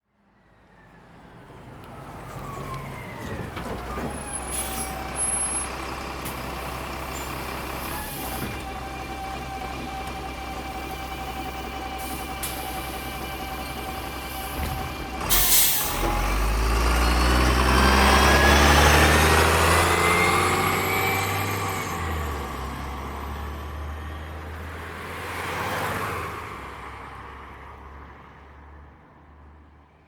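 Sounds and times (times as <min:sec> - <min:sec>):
bus engine revving: 0:01.5 - 0:25.0
air brakes hissing: 0:04.0 - 0:09.6, 0:10.7 - 0:16.6.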